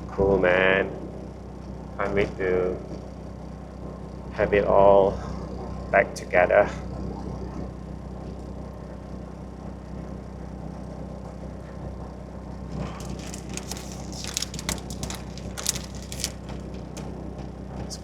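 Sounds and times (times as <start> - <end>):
clicks and rustles of parts: 12.8 - 17.2.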